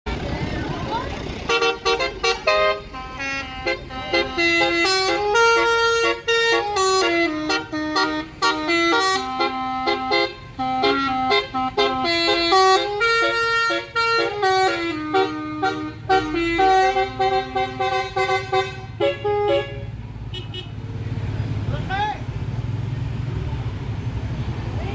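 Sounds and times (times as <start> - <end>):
multi-tone musical horn tune: 1.5 - 19.8.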